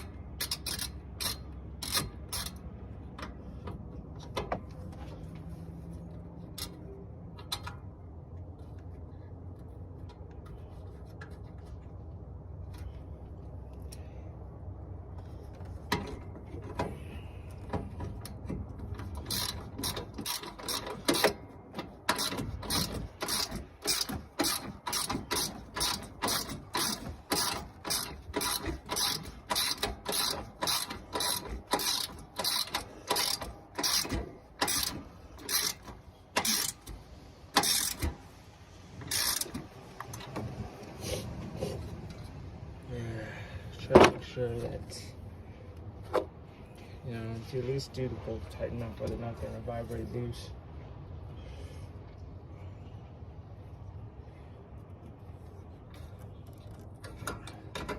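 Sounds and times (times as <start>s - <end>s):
ratchet wrench clicking: 0.0s - 2.6s, 18.2s - 38.2s, 39.0s - 40.3s.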